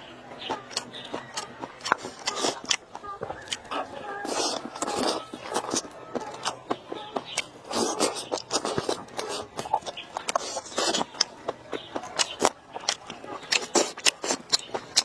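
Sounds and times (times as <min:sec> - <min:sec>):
chewing and mouth clicks: 0:00.4 - 0:15.0
crunchy bursts: 0:00.6 - 0:06.7.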